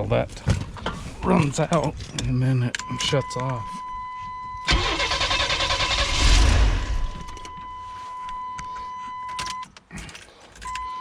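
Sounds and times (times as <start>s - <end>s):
car engine cranking and catching: 4.6s - 7.7s.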